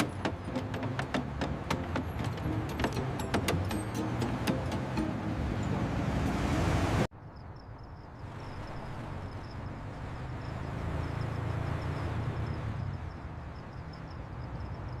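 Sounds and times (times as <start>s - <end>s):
scooter engine running: 0.0s - 6.1s.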